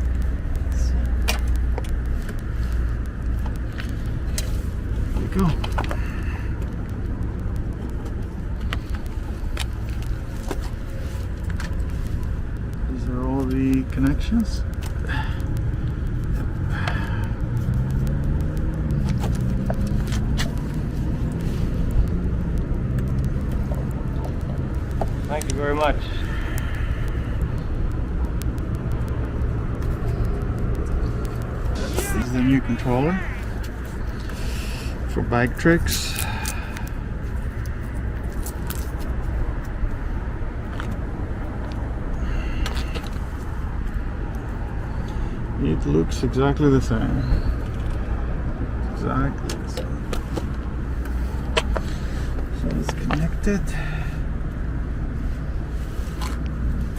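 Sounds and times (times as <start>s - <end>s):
light clicks and taps: 0.0s - 31.8s
traffic rumble: 0.0s - 56.9s.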